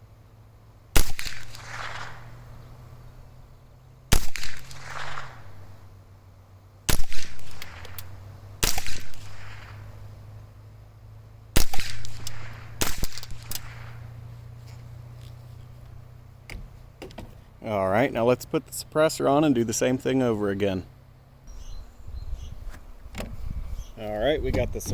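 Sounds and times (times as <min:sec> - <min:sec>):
rifle shots with echo: 0:01.0 - 0:02.5, 0:04.1 - 0:05.7, 0:06.9 - 0:09.9, 0:11.6 - 0:14.1.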